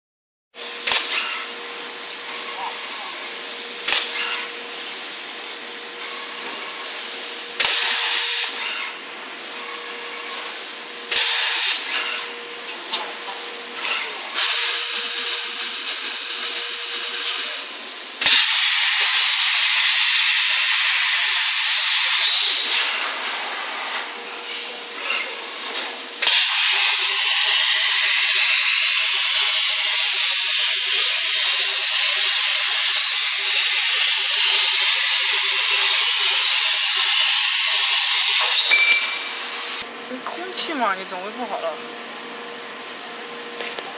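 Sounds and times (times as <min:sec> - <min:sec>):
machine hiss and hum: 0:00.6 - 0:40.7
plasma torch hissing: 0:06.3 - 0:08.8, 0:10.3 - 0:12.2, 0:14.2 - 0:24.7, 0:25.3 - 0:39.8.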